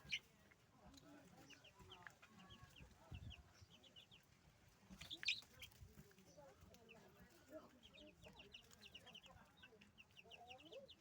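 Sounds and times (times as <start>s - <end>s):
chickens clucking: 0.0s - 0.3s, 0.9s - 7.0s.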